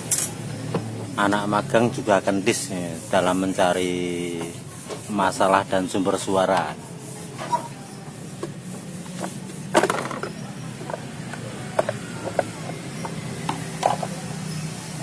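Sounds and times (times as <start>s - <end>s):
scooter engine humming: 8.2s - 15.0s
wheel bearing clicks and creaks: 8.4s - 15.0s.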